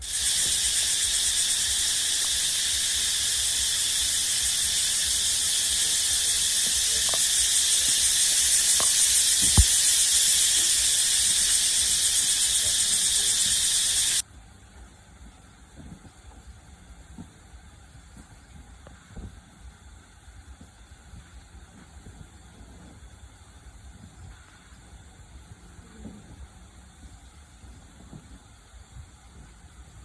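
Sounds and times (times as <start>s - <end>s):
insects buzzing: 0.0s - 14.2s.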